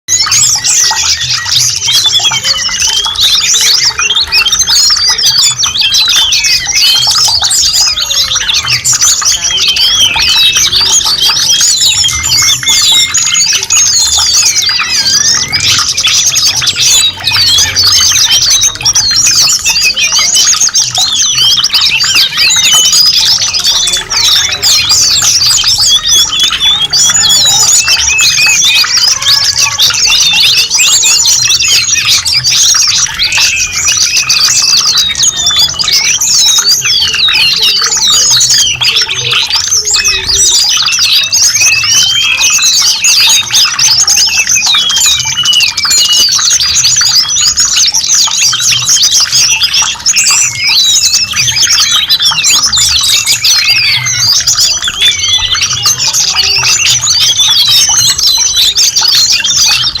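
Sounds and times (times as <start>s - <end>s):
small birds chirping: 0.0s - 60.0s.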